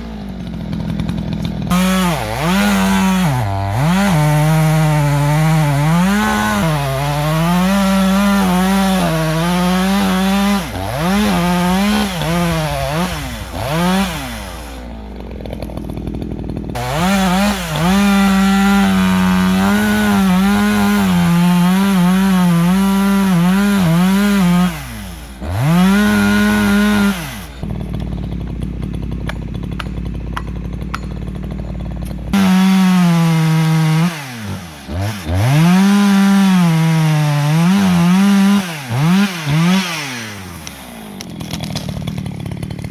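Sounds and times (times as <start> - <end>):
chainsaw cutting wood: 0.0 - 42.9.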